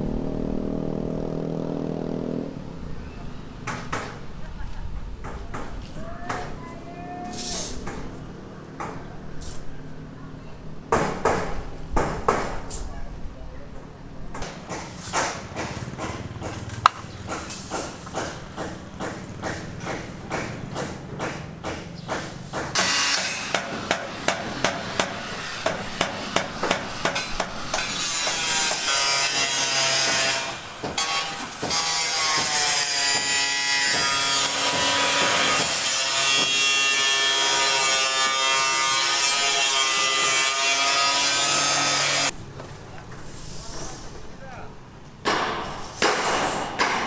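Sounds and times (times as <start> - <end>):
rhythmic sawing strokes: 14.6 - 42.4.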